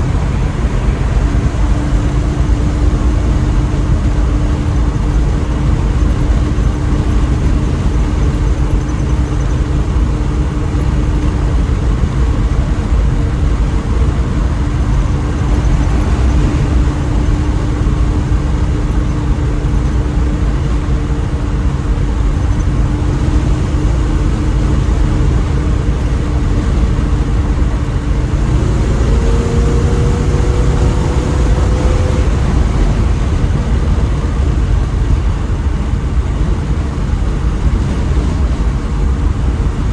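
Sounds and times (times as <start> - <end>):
car engine driving: 0.0 - 39.9.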